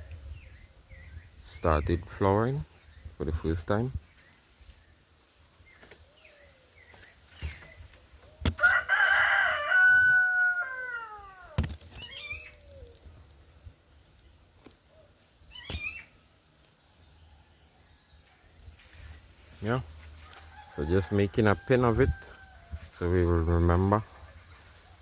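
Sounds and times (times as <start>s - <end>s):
small birds chirping: 0.0s - 25.0s
rooster crowing: 8.6s - 11.6s, 20.2s - 22.9s.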